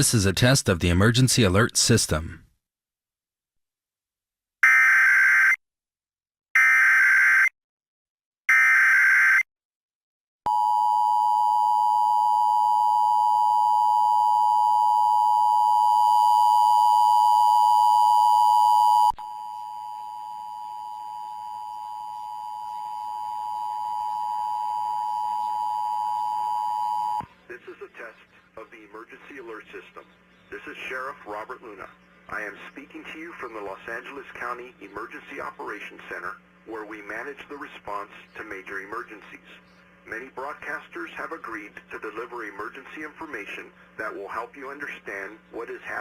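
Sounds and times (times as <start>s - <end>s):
screeching data tone bursts: 19.2s - 27.2s.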